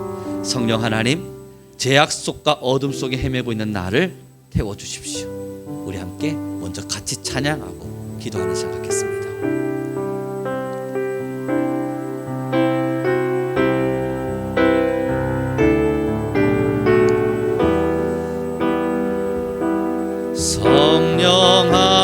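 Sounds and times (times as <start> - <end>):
piano chords: 0.0 - 22.0.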